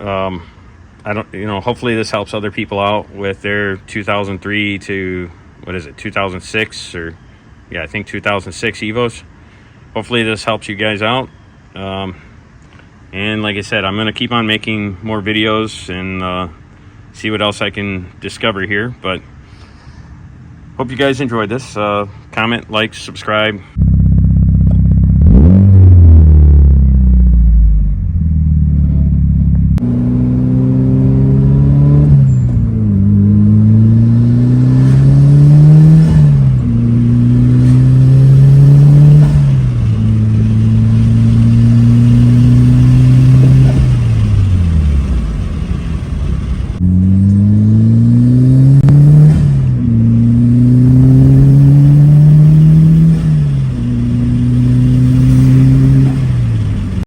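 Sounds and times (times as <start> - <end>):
car engine revving: 23.8 - 57.0.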